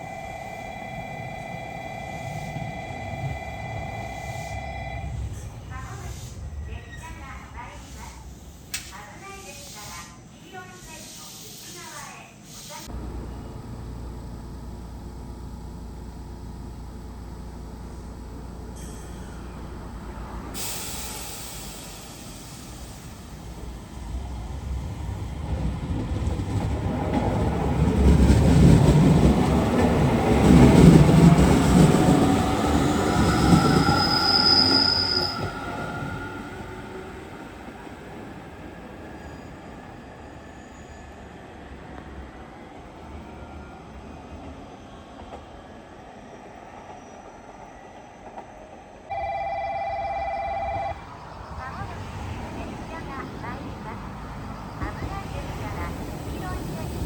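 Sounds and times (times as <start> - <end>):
train rumble: 0.0 - 11.0, 11.7 - 40.0, 49.9 - 57.0
faint rising whine: 12.9 - 20.5.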